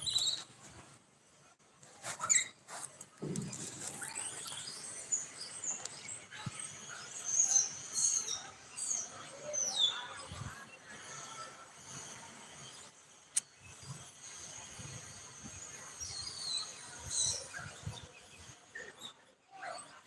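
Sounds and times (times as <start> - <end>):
small animals squeaking: 0.0 - 0.5, 2.1 - 2.6.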